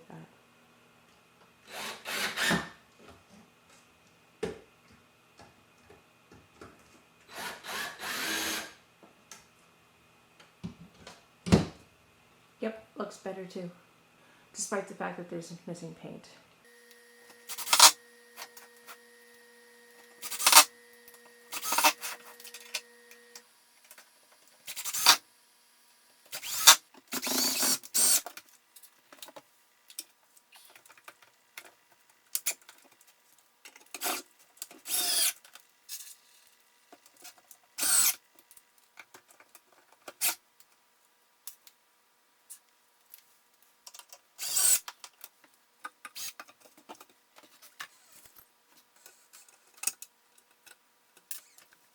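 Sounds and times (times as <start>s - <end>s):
tools scraping and clicking: 17.4s - 19.0s, 20.0s - 25.2s, 43.8s - 51.8s.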